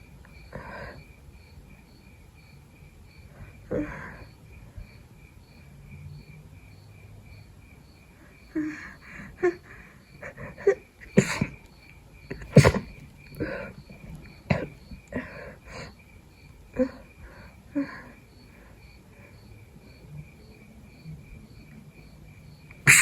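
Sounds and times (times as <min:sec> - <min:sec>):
person sneezing: 0:11.2 - 0:11.6, 0:12.4 - 0:12.9.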